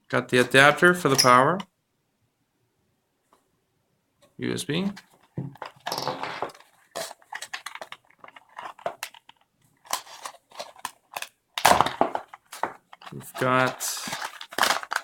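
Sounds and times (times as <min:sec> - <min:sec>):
packaging rustling and crinkling: 0:05.6 - 0:15.0.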